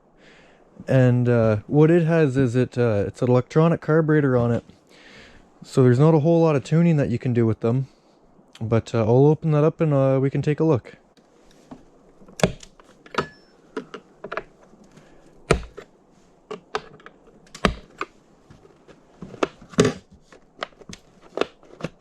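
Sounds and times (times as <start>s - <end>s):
chainsaw cover clicks and knocks: 12.3s - 14.5s, 15.5s - 15.8s, 16.5s - 18.1s.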